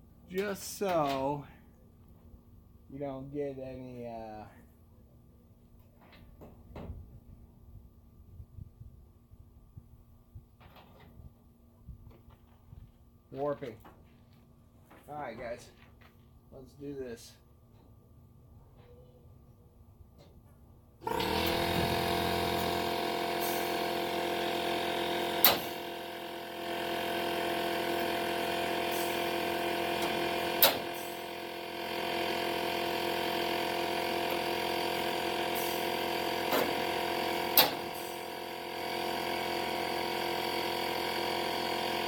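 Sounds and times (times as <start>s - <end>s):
motor humming: 21.0s - 42.0s.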